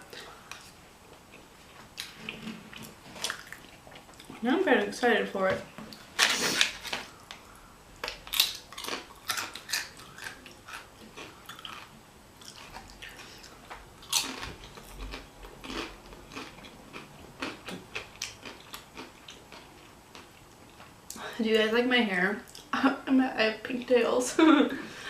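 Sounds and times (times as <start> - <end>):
wet chewing mouth sounds: 0.1 - 4.4, 8.0 - 21.0.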